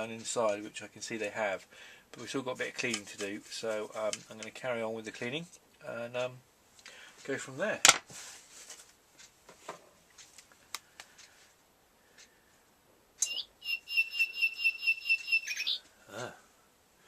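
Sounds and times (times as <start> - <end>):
faint clock clicks: 9.2 - 9.4, 10.0 - 12.6
recorded birdsong trill: 13.2 - 15.9.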